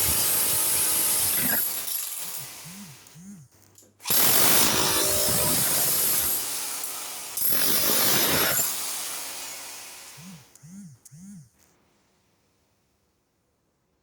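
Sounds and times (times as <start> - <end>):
power tool bursts: 0.0 - 3.4, 4.0 - 11.3.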